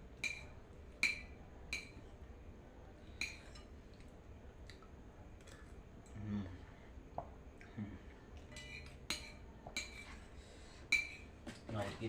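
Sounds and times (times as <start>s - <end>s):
metal spoon clinking on dish: 0.2s - 2.0s, 8.5s - 10.2s, 10.9s - 11.3s.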